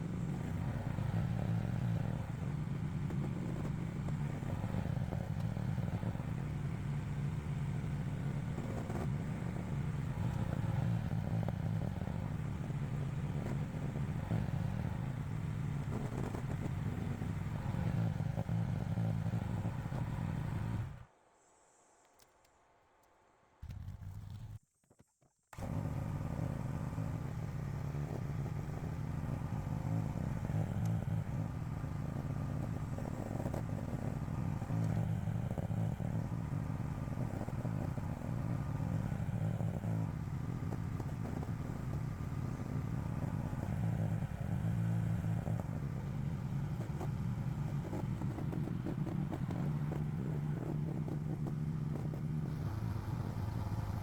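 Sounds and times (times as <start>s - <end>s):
excavator engine under load: 25.6s - 54.0s.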